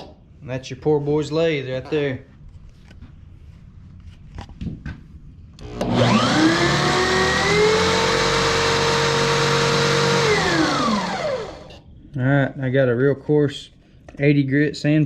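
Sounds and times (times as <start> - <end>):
electric drill motor whining: 5.6 - 11.8.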